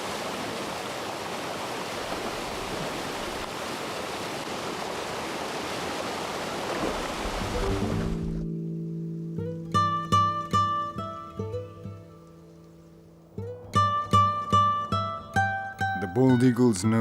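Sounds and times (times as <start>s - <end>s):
river water rushing: 0.0s - 8.5s.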